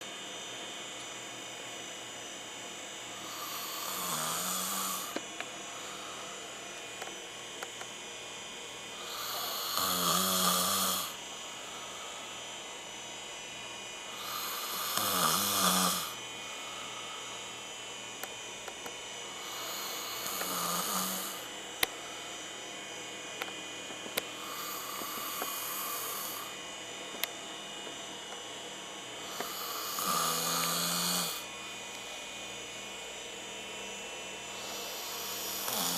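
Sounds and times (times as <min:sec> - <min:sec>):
person snoring: 0:03.2 - 0:06.4, 0:09.0 - 0:12.2, 0:14.1 - 0:16.2, 0:19.4 - 0:21.5, 0:24.4 - 0:26.6, 0:29.2 - 0:31.5, 0:34.5 - 0:35.9
soft breathing: 0:34.5 - 0:35.8.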